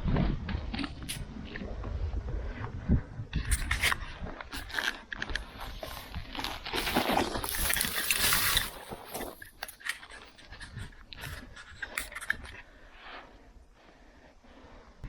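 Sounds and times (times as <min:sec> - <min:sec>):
carcass dragged scraping down slope: 0:05.6 - 0:09.4.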